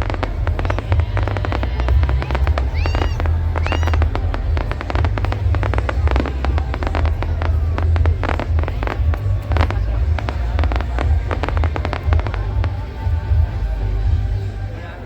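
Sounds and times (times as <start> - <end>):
fireworks crackling and banging: 0.0 - 14.7
steady low rumble: 0.0 - 14.8
fireworks rising whistles: 0.7 - 4.1.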